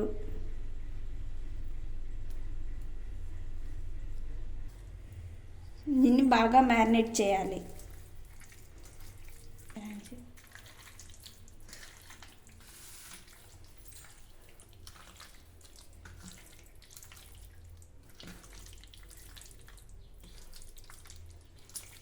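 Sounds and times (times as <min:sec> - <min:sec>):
hands squelching meat in marinade: 0:06.9 - 0:22.0.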